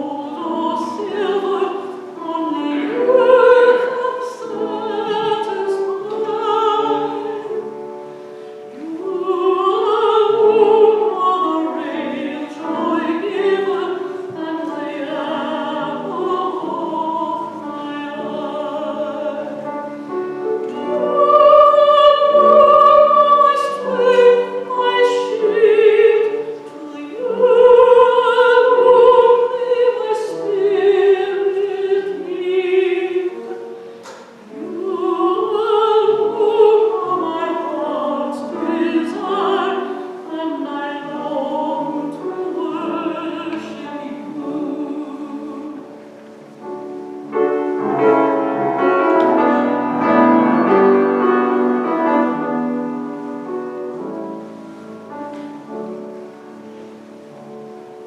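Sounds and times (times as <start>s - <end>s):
woman singing operatically: 0.0s - 7.6s, 8.8s - 19.6s, 20.8s - 33.4s, 34.6s - 45.9s
instrumental accompaniment: 41.8s - 58.0s.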